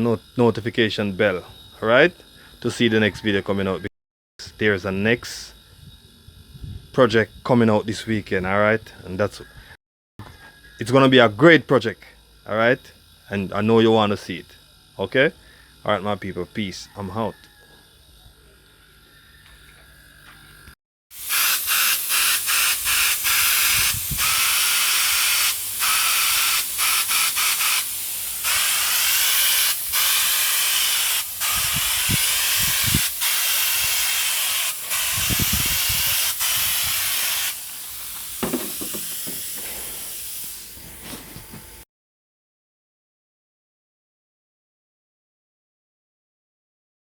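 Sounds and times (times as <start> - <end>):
air spray gun hissing: 21.1 - 41.8.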